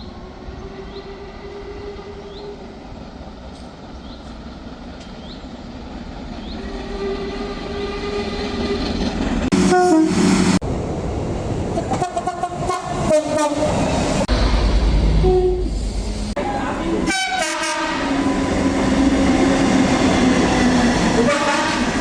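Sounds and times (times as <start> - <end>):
train rumbling: 0.0 - 22.0
train horn blasts: 9.5 - 10.4, 11.9 - 13.8, 15.2 - 15.7, 17.1 - 19.5, 21.2 - 22.0.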